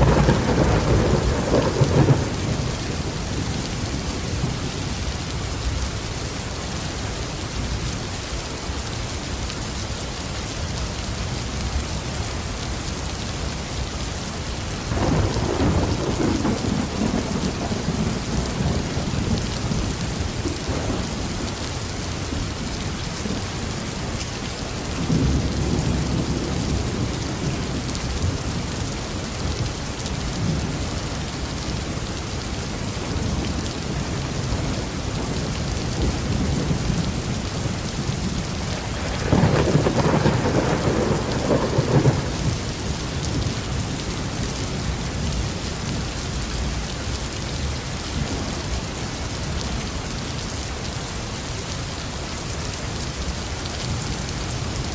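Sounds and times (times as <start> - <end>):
thunder rumbling: 0.0 - 5.0, 14.9 - 22.6, 24.9 - 28.9, 33.0 - 44.5
heavy rain on a roof: 0.0 - 54.9.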